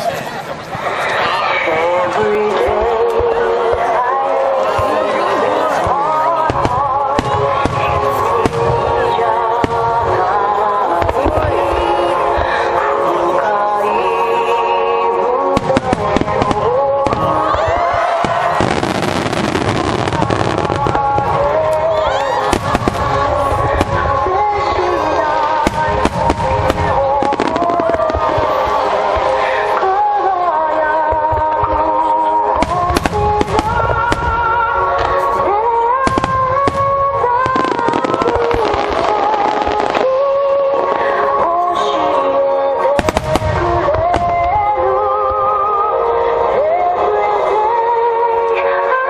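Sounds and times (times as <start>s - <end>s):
music over loudspeakers: 0.7s - 49.0s
melody of long held notes: 1.7s - 49.0s
fireworks bangs and crackling: 4.5s - 12.8s, 15.5s - 30.0s, 31.1s - 42.0s, 42.7s - 45.6s.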